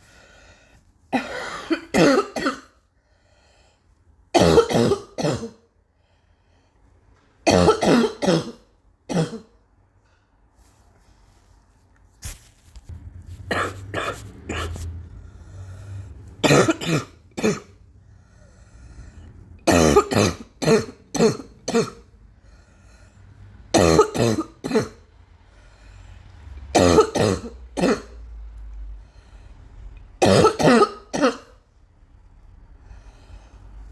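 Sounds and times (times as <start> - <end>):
person coughing harshly: 1.1 - 2.8, 4.3 - 5.7, 7.4 - 9.6, 13.5 - 14.9, 16.4 - 17.8, 19.6 - 22.1, 23.7 - 25.0, 26.7 - 28.2, 30.2 - 31.6.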